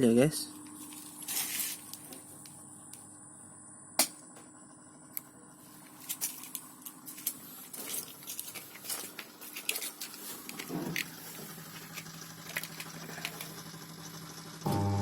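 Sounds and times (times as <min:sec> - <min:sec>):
washing machine humming: 0:04.3 - 0:15.0.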